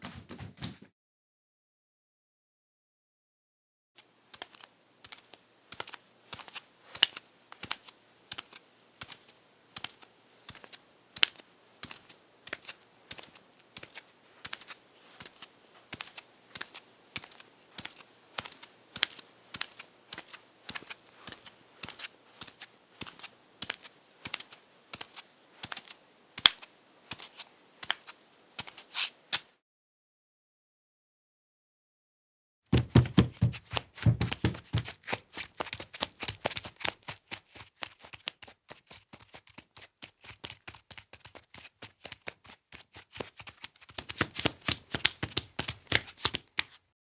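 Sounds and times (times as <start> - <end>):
bare footsteps walking: 0.0 - 0.9, 4.0 - 29.6, 32.8 - 37.0.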